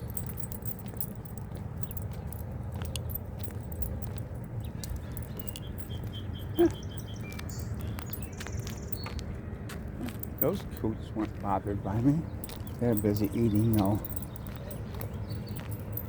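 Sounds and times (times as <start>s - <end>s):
handling noise: 0.0s - 10.8s, 12.2s - 16.0s
light metal jingling: 0.0s - 16.0s
high chirps: 5.0s - 9.2s.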